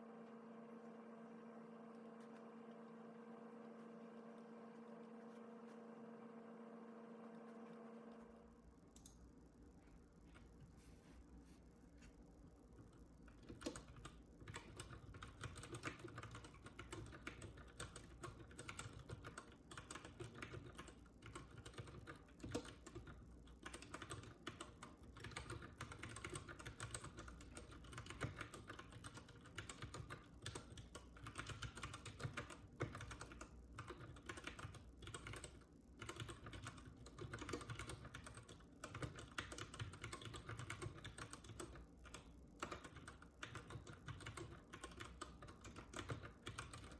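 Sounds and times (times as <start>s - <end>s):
mechanical keyboard typing: 12.8s - 46.9s.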